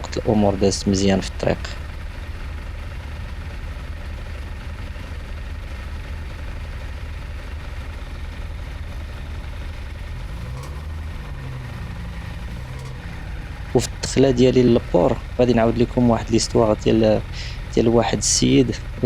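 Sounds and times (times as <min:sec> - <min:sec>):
engine revving: 0:00.0 - 0:01.9, 0:09.0 - 0:19.0
engines idling: 0:00.0 - 0:19.0.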